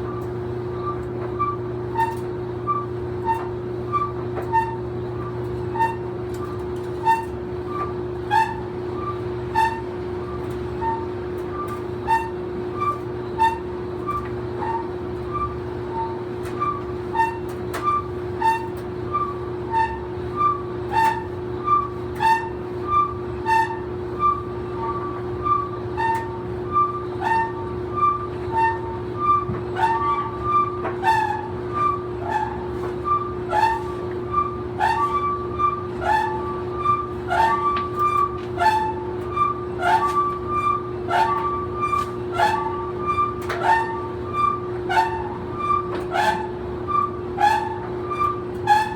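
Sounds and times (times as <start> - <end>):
clothes dryer motor hum: 0.0 - 48.9
dryer drum two-note squeak: 0.0 - 48.9.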